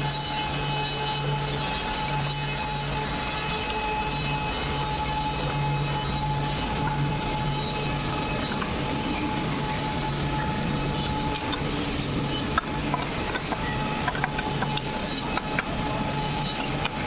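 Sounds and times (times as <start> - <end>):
wood planer humming and whining: 0.0 - 17.0
sharp clicks and knocks: 12.4 - 15.8.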